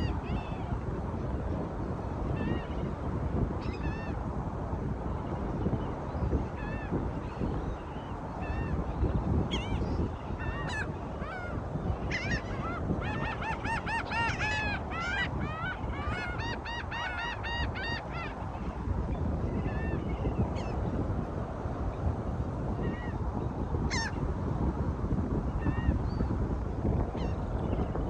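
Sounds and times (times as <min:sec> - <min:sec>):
low rush of wind or surf: 0:00.0 - 0:28.0
flock of birds honking: 0:10.4 - 0:11.5.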